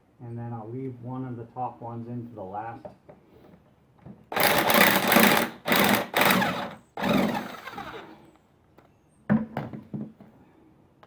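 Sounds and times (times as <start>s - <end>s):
impact wrench rattling: 4.4s - 8.1s.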